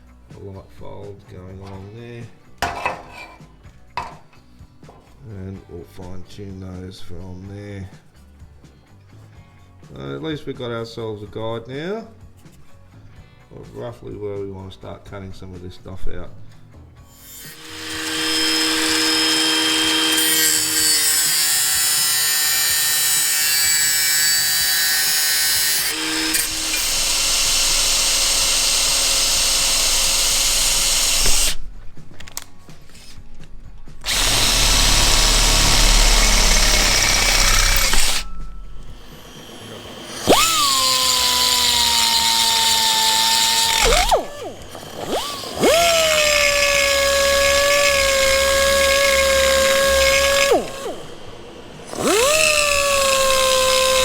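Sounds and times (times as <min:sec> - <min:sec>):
grinder cutting sheet steel: 0:17.1 - 0:31.7, 0:33.9 - 0:54.0
grinder spinning up unloaded: 0:17.1 - 0:54.0.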